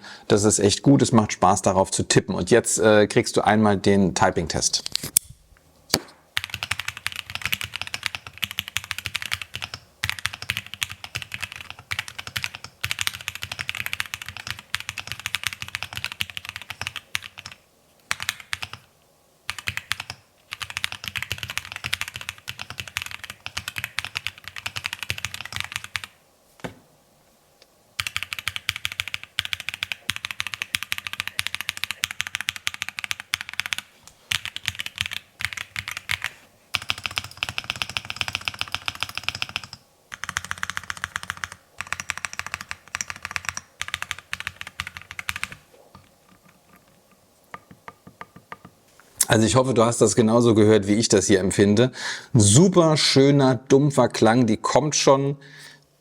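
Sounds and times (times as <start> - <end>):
mechanical keyboard typing: 6.4 - 18.9, 19.5 - 26.2, 28.0 - 46.9.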